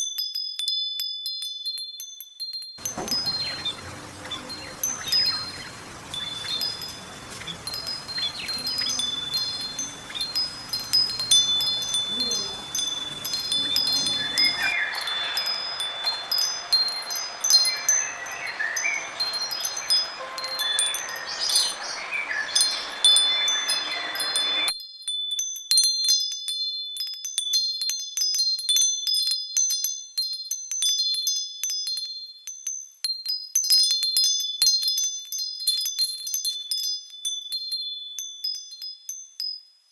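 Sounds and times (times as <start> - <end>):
wind chimes ringing: 0.0 - 39.9
background hiss: 2.8 - 24.7.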